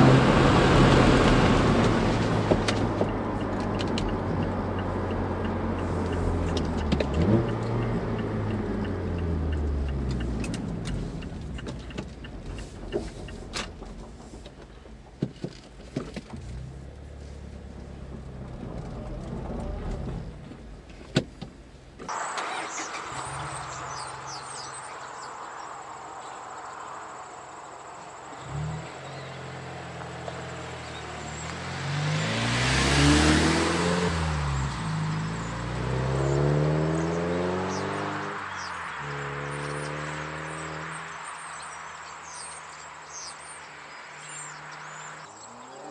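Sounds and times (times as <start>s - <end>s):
car engine accelerating past: 28.3s - 45.9s.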